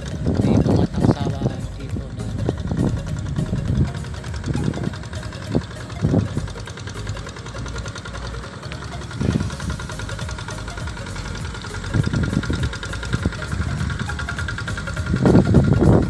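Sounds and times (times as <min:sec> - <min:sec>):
engine idling: 0:00.0 - 0:16.0.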